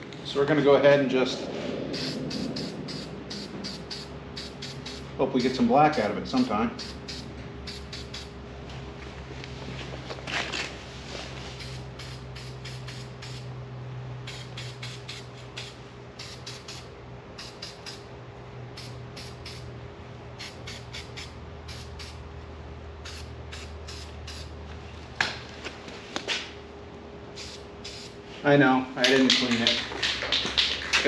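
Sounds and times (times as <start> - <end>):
steady low hum: 0.0 - 31.0
spray paint can spraying: 1.9 - 8.4, 11.6 - 13.5, 14.2 - 18.1, 18.8 - 19.7, 20.4 - 22.2, 23.0 - 24.5, 27.4 - 28.2.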